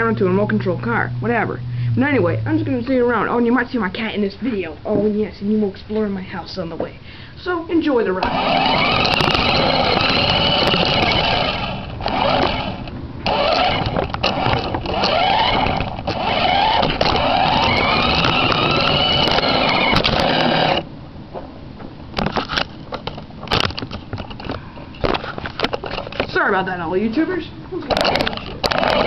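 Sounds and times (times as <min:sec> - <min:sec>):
toy car motor whining: 0:08.2 - 0:20.8, 0:27.9 - 0:29.0.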